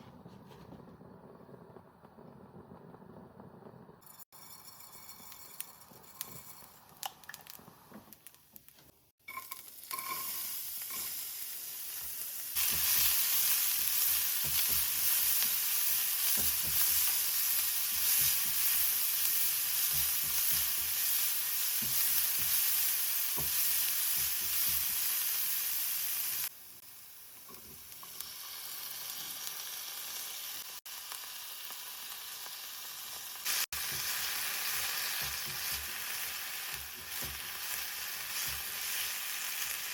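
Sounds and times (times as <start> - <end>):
stirring in a pan: 4.1 - 7.9
food sizzling in a pan: 4.1 - 39.9.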